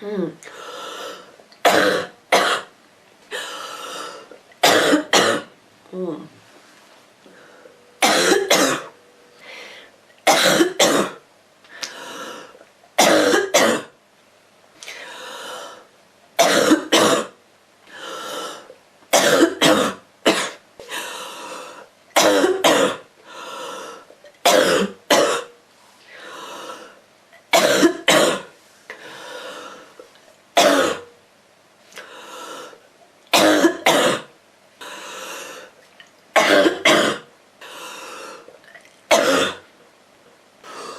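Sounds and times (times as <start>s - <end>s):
girl coughing: 1.7s - 2.7s, 4.6s - 5.5s, 8.0s - 8.9s, 10.3s - 11.2s, 13.0s - 13.9s, 16.4s - 17.4s, 19.2s - 20.6s, 22.2s - 23.0s, 24.5s - 25.5s, 27.6s - 28.5s, 30.6s - 31.0s, 33.4s - 34.3s, 36.4s - 37.3s, 39.1s - 39.6s.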